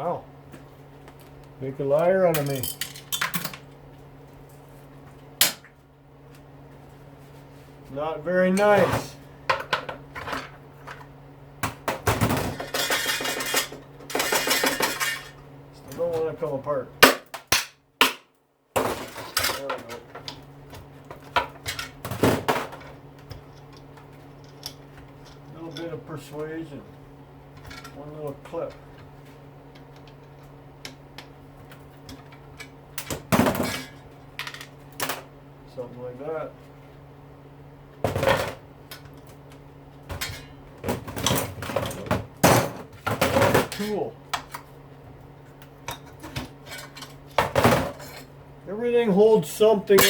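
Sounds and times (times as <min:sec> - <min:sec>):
loud clatter of parts: 0:02.3 - 0:03.6, 0:11.9 - 0:15.4, 0:18.8 - 0:20.2, 0:46.2 - 0:48.3
metal parts knocking and clinking: 0:02.3 - 0:03.6
metal parts clattering and scraping: 0:02.4 - 0:03.5, 0:12.6 - 0:15.4.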